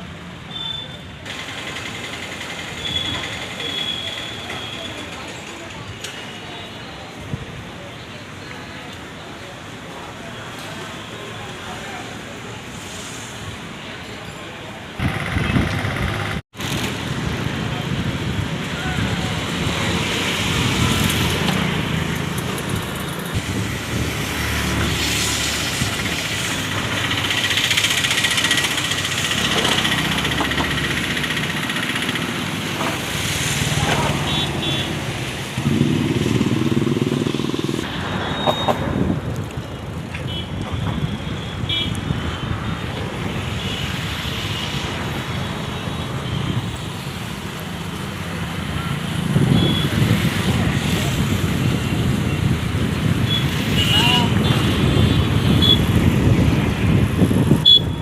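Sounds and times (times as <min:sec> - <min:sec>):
traffic rumble: 0:00.0 - 0:58.0
short high beeps: 0:38.2 - 0:38.9.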